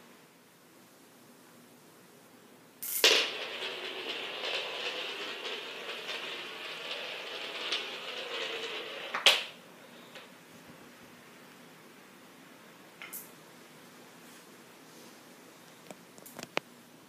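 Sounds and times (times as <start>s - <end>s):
ball bearing rolling and rattling: 2.8s - 10.3s.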